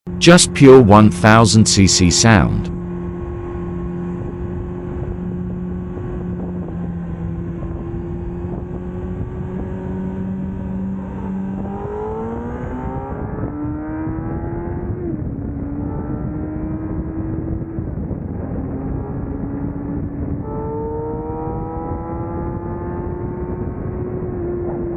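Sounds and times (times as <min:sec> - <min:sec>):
motorcycle engine revving: 0:15.5 - 0:24.9.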